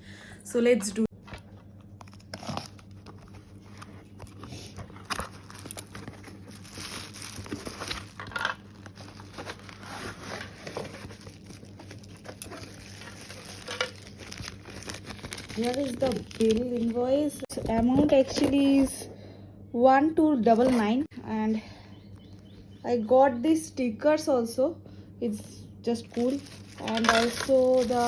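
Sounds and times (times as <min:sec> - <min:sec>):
packaging crinkling and tearing: 0:01.2 - 0:19.0, 0:26.0 - 0:28.0.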